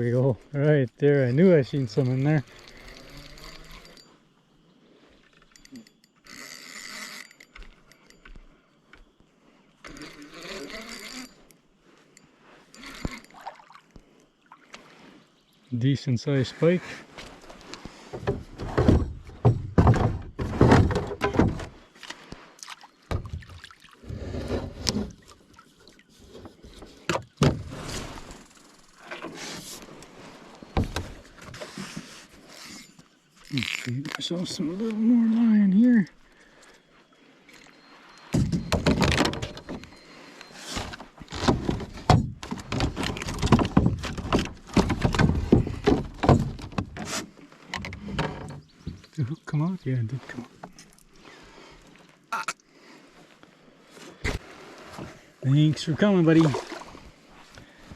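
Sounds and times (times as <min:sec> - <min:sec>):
thumps and knocks in boat: 0:18.0 - 0:21.8, 0:23.1 - 0:25.4, 0:26.2 - 0:27.8, 0:30.7 - 0:32.0, 0:38.3 - 0:39.9, 0:40.7 - 0:49.2
fish thrashing against boat: 0:40.7 - 0:48.8.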